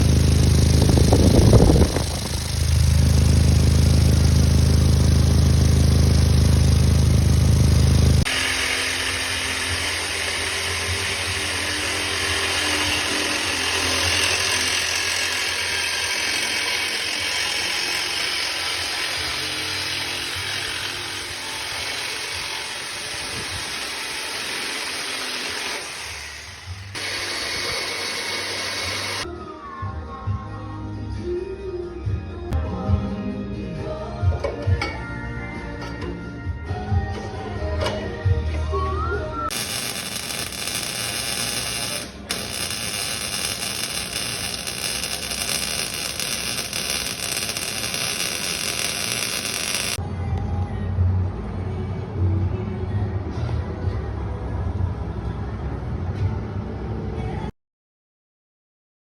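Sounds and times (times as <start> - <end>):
car engine idling with exhaust leak: 0.0 - 12.6
harsh power tool noise: 0.0 - 29.3, 39.5 - 50.0.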